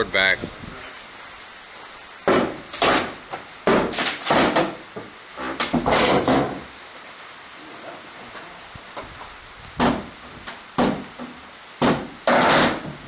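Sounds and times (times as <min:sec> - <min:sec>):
wooden board creaking and scraping: 0:02.3 - 0:06.7, 0:12.0 - 0:13.0.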